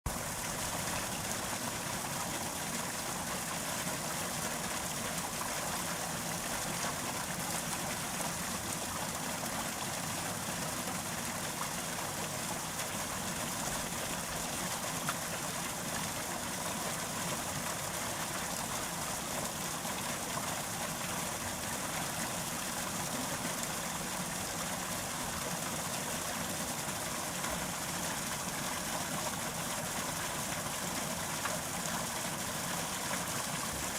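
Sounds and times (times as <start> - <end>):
brook babbling over stones: 0.1 - 33.9.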